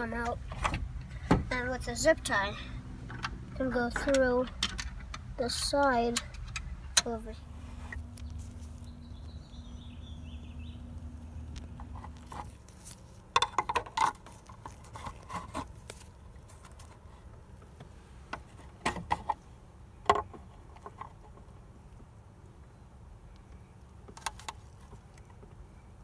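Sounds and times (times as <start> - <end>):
low steady hum: 0.0 - 26.0
hard plastic clicking and rattling: 13.3 - 17.0.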